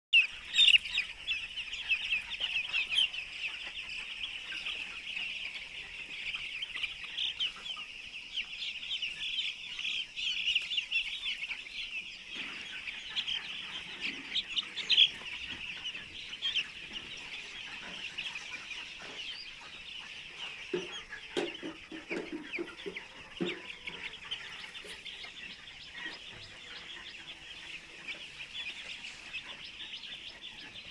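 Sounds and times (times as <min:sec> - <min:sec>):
chicks cheeping: 0:00.2 - 0:30.9.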